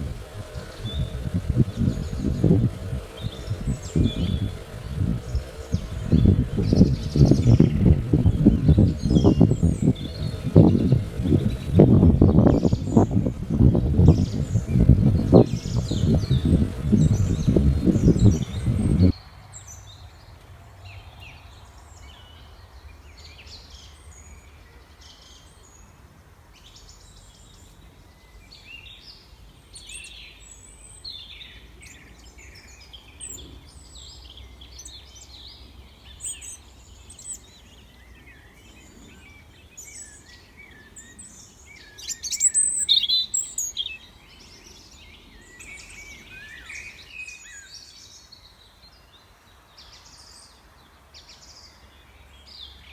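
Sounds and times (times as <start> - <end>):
faint low hum: 0.0 - 19.1
loud low rumble: 0.0 - 19.1
small birds chirping: 0.0 - 19.1, 31.2 - 52.9.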